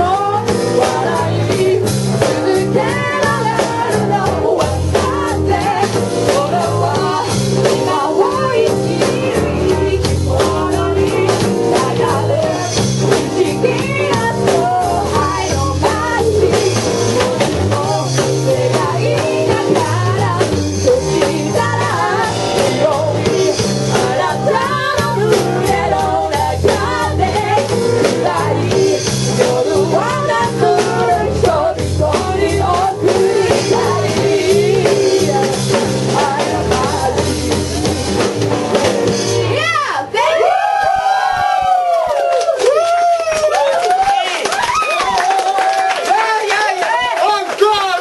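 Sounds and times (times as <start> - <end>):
person singing: 0.0 - 38.0
low bass notes: 0.0 - 39.9
guitar: 0.0 - 43.5
drum kit: 0.0 - 47.1.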